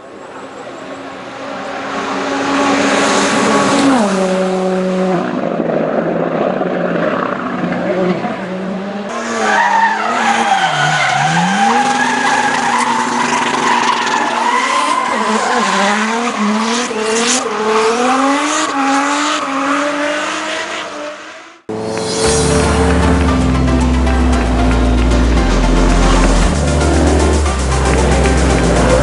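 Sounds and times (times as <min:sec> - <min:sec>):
race car engine at high revs: 0:00.6 - 0:29.0
tyres squealing: 0:09.4 - 0:16.9.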